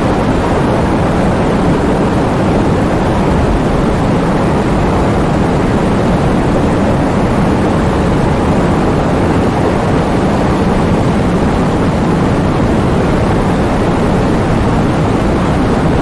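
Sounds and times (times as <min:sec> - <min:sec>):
heavy rain: 0:00.0 - 0:16.0
deep low thunder rumble: 0:02.5 - 0:08.4.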